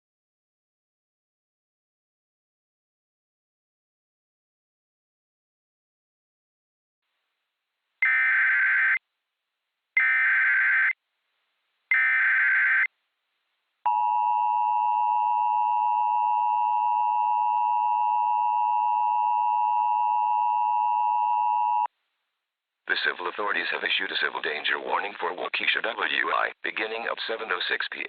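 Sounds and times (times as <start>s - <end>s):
two-tone alert alarm: 8.0s - 9.0s, 10.0s - 10.9s, 11.9s - 12.9s.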